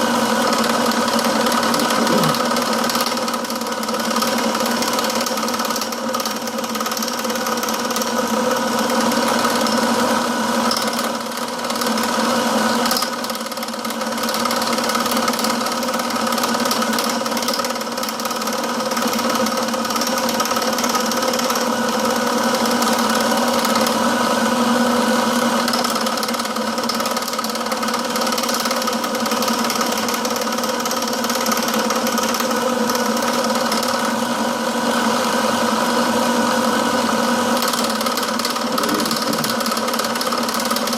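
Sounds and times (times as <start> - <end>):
tool bit cutting steel: 0.0 - 8.2, 37.6 - 40.9
milling machine motor hum: 0.0 - 40.9.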